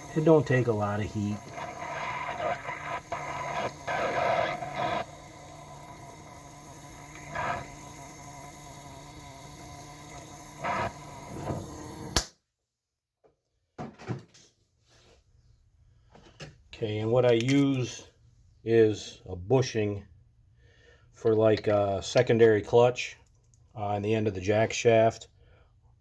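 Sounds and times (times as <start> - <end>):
torch flame hissing: 0.0 - 12.3
torch valve click: 0.0 - 12.3.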